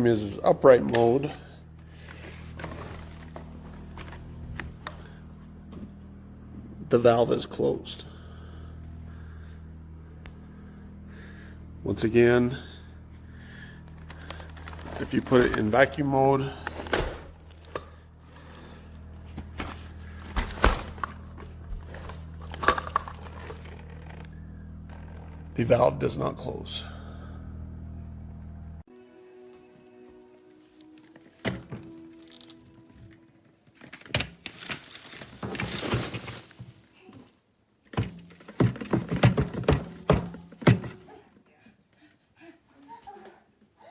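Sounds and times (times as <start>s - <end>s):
low steady hum: 0.0s - 28.9s
vacuum cleaner parts clicking: 20.5s - 24.2s, 31.0s - 36.7s, 37.8s - 41.2s.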